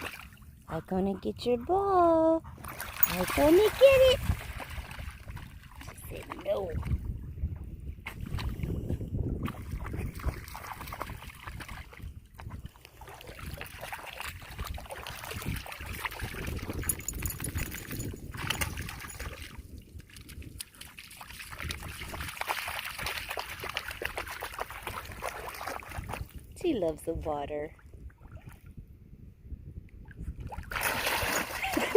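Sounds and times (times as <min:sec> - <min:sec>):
dog splashing in water: 0:00.0 - 0:00.4, 0:02.6 - 0:07.0, 0:09.4 - 0:26.4, 0:30.5 - 0:31.9.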